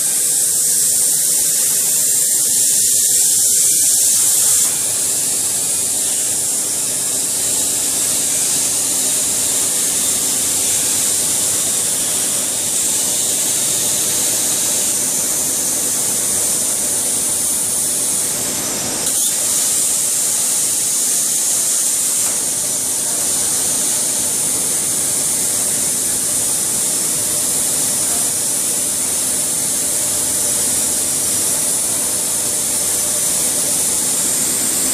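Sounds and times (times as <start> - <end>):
plasma torch hissing: 0.0 - 34.9
steady hum: 0.0 - 34.9.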